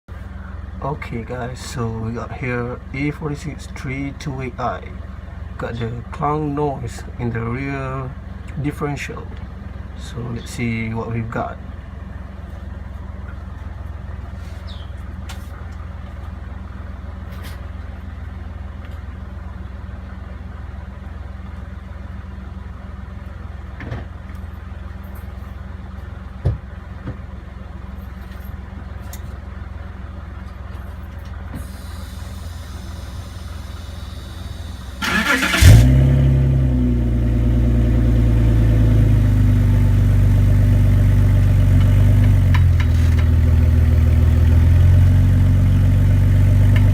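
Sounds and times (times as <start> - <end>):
steady low hum: 0.1 - 42.0
car engine starting and idling: 15.7 - 46.9.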